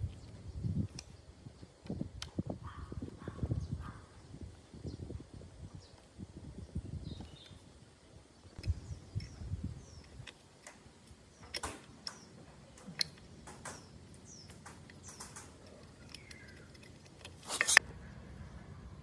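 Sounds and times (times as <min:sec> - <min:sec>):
irregular clicks and taps: 0:10.0 - 0:17.8.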